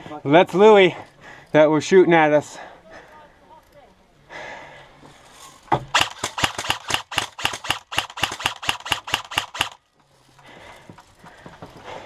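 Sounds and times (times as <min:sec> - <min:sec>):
airsoft gun shots: 0:05.9 - 0:09.8.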